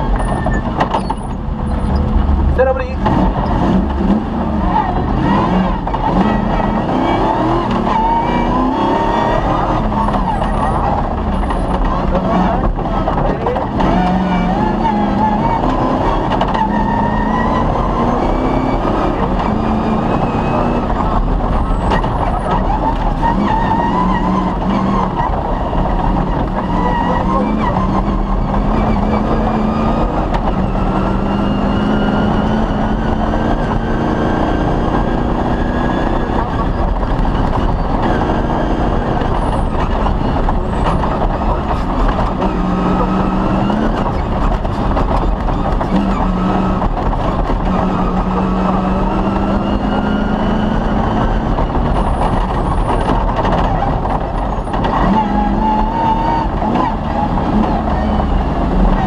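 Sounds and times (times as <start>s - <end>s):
rally car engine revving: 0.0s - 59.0s
rumbling road and suspension noise: 0.0s - 59.0s.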